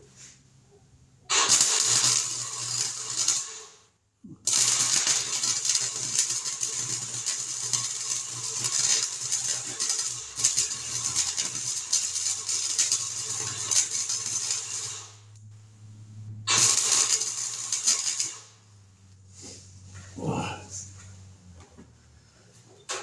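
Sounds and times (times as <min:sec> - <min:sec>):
welding arc crackling: 0:01.3 - 0:03.8, 0:04.5 - 0:19.0
low hum: 0:14.1 - 0:22.2.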